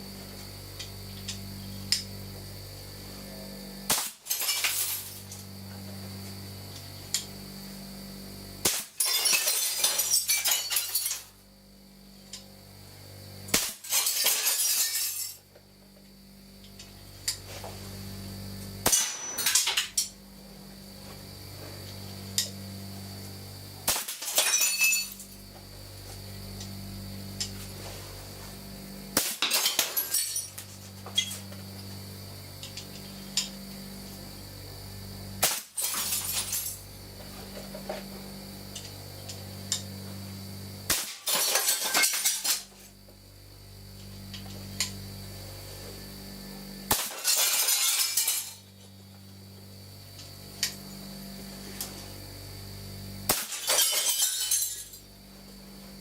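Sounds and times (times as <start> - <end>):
air compressor humming: 0.0 - 9.0, 11.2 - 13.9, 15.4 - 41.2, 42.7 - 47.0, 48.1 - 53.5, 54.6 - 56.0
air gun shots: 3.9 - 4.3, 8.6 - 9.0, 13.5 - 13.8, 18.8 - 19.4, 23.9 - 24.2, 29.2 - 29.5, 35.4 - 35.8, 40.9 - 41.3
glass shattering and tinkling: 4.3 - 5.2, 9.0 - 11.3, 13.8 - 15.4, 18.9 - 20.0, 24.2 - 25.2, 29.4 - 31.4, 35.8 - 36.8, 41.0 - 42.7, 46.9 - 48.6, 53.3 - 55.0.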